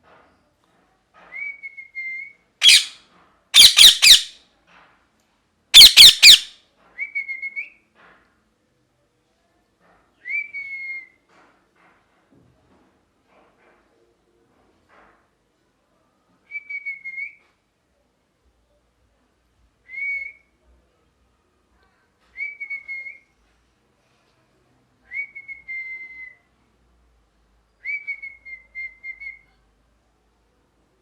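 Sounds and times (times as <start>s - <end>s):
parrot whistled calls: 2.6s - 3.0s, 3.6s - 4.4s, 5.8s - 6.5s.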